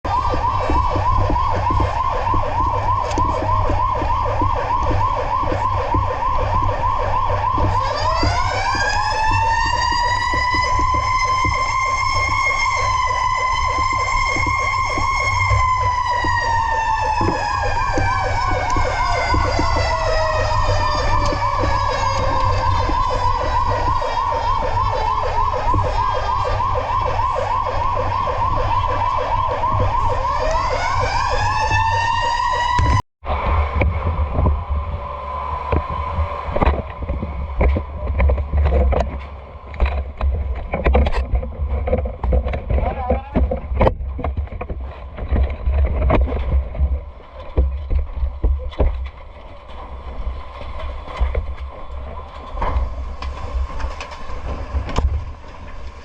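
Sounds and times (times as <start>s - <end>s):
electronic siren yelp: 0.0s - 33.0s
wailing siren winding up: 0.1s - 33.7s
low rumble: 32.8s - 56.0s.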